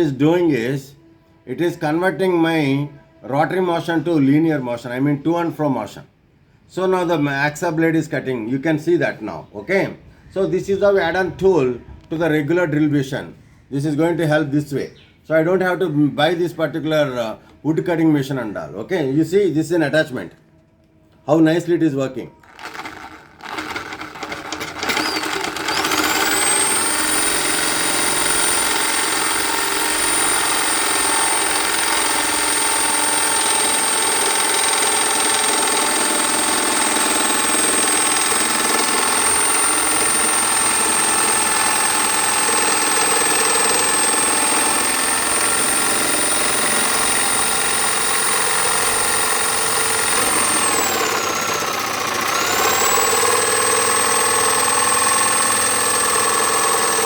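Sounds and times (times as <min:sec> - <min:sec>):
electric drill motor whining: 0:22.4 - 0:57.0
saw blade cutting wood: 0:22.4 - 0:57.0.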